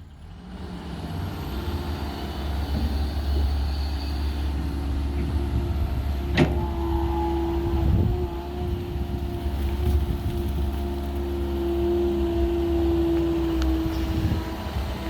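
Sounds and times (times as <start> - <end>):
diesel engine running: 0.0 - 15.0.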